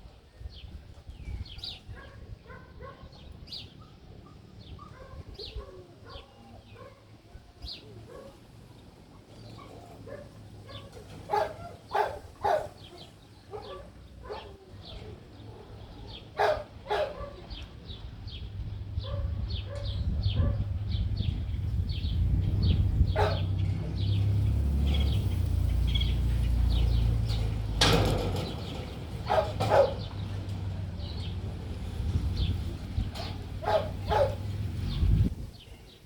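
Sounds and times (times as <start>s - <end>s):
dog barking: 1.9s - 7.1s, 8.0s - 8.4s, 9.6s - 14.7s, 15.5s - 17.6s, 19.0s - 20.7s, 23.1s - 23.6s, 29.2s - 30.1s, 33.2s - 34.5s
low rumbling noise: 18.2s - 35.6s.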